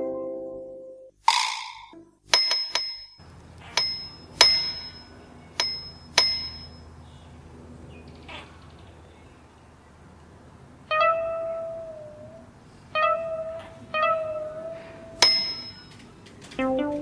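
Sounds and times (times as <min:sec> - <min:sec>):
plucked string notes: 0:00.0 - 0:02.2, 0:10.9 - 0:15.9, 0:16.6 - 0:17.0
sharp bright ringing strike: 0:03.8 - 0:06.8, 0:15.2 - 0:16.0.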